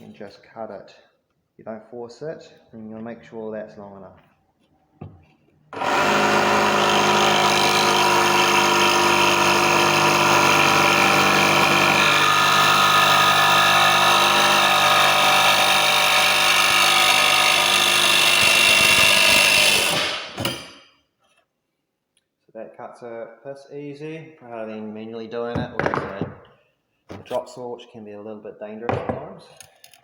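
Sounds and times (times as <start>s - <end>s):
jigsaw cutting metal bar: 5.7s - 20.9s.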